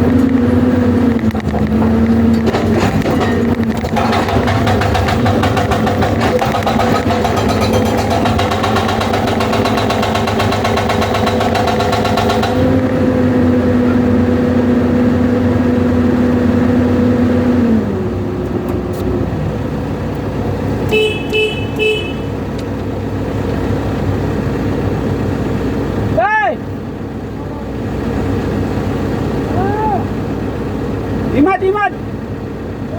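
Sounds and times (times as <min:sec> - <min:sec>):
diesel engine humming: 0:00.0 - 0:32.9
hydraulic breaker hammering: 0:01.2 - 0:12.9
short horn toots: 0:20.9 - 0:22.4.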